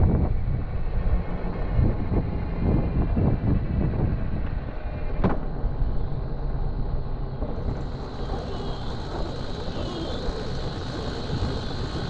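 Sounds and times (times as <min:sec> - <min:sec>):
wind buffeting microphone: 0:00.0 - 0:04.8, 0:07.1 - 0:12.0
motorcycle engine rumbling: 0:07.4 - 0:12.0.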